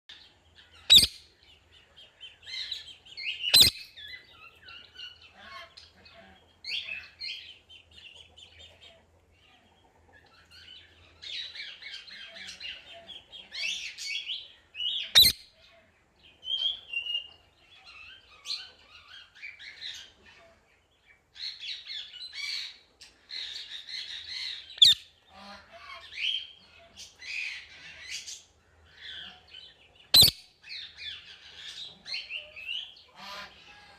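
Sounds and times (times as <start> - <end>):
parakeet chattering and chirping: 0.8 - 1.3, 2.5 - 5.8, 14.9 - 15.5, 23.4 - 25.2, 30.1 - 31.5.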